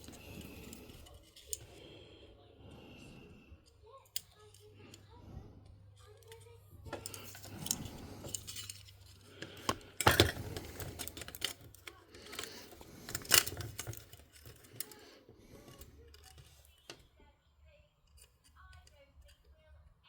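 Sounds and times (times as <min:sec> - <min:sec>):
clicks and clatter of small parts: 0:00.0 - 0:01.8, 0:06.0 - 0:17.2, 0:18.0 - 0:19.6.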